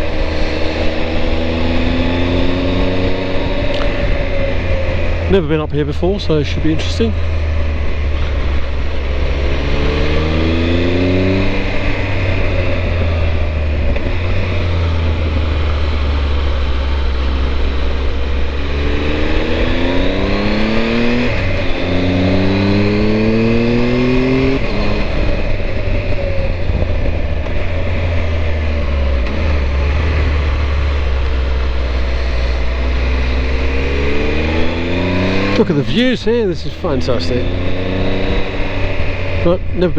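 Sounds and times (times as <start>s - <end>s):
motorcycle engine accelerating: 0.0s - 39.9s
steady low rumble: 0.0s - 39.9s.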